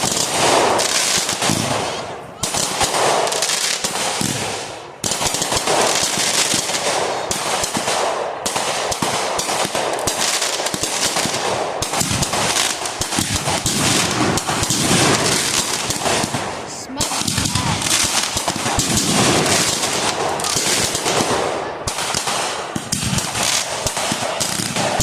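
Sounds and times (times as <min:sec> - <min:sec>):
firecrackers popping: 0:00.0 - 0:25.0.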